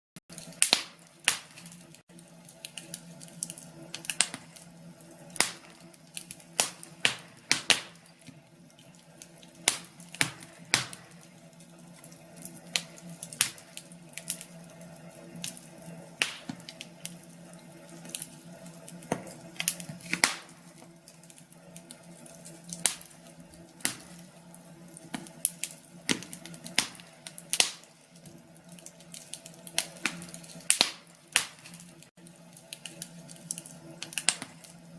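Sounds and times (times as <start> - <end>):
wood fire crackling: 0.2 - 34.9.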